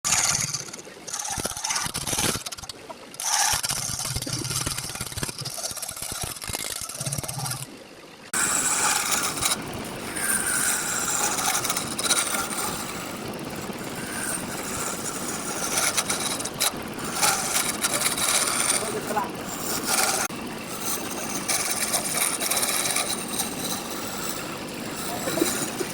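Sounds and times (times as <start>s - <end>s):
tool cutting spinning wood: 0.0s - 7.7s, 8.3s - 25.9s
knocks and scrapes on wood: 14.0s - 25.9s.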